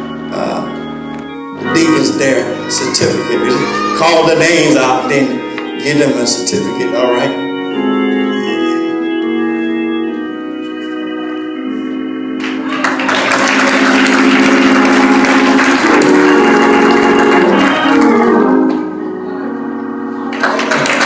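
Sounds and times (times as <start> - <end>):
organ sustained chords: 0.0 - 21.0
applause: 12.4 - 18.5, 20.3 - 21.0.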